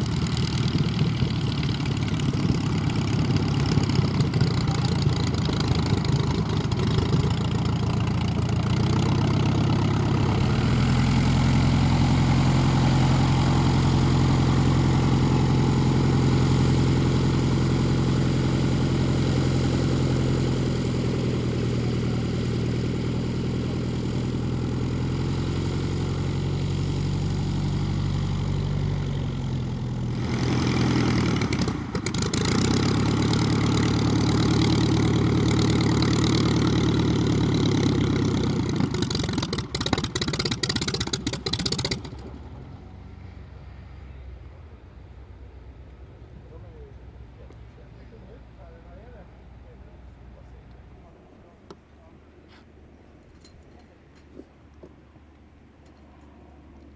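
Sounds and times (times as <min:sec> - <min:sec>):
piston aircraft engine running: 0:00.0 - 0:56.9.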